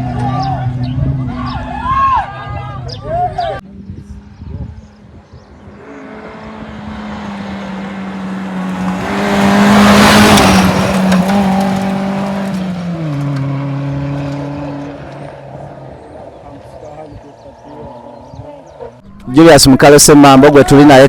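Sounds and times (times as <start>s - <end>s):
tyre and road noise: 3.6s - 20.8s
rally car engine passing: 3.7s - 19.0s.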